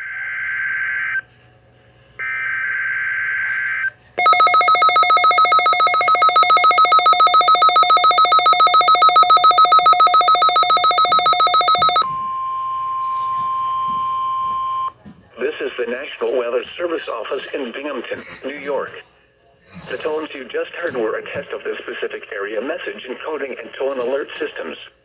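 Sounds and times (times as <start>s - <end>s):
rapidly pulsing electronic alarm: 4.2s - 12.0s.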